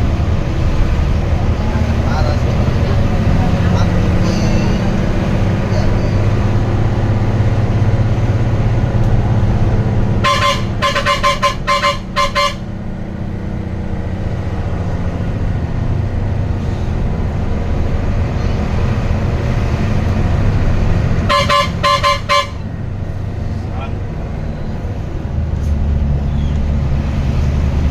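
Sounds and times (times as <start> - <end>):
bus engine hum: 0.0 - 27.9
bus horn short toots: 10.2 - 12.8, 21.3 - 22.7.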